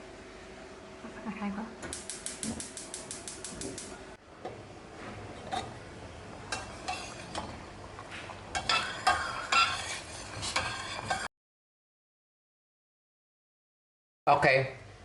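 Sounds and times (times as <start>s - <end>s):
utensil stirring rice in pot: 6.5s - 7.4s, 8.6s - 11.3s.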